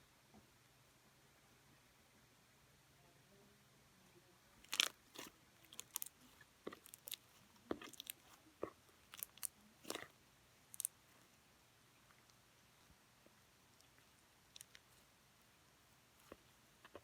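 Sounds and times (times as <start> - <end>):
slime crackling and popping: 4.6 - 10.1, 10.7 - 11.0.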